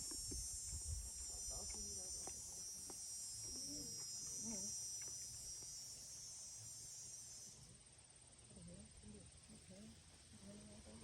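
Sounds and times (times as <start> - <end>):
insects trilling: 0.0 - 11.0.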